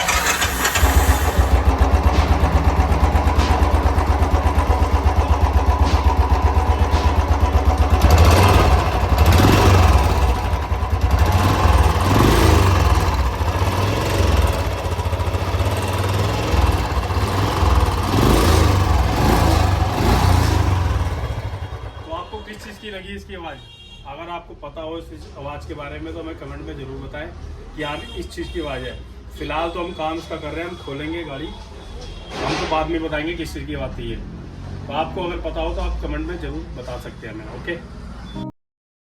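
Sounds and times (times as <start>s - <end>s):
abnormal engine noise: 0.0s - 22.0s
motorcycle engine idling and revving: 0.0s - 22.1s.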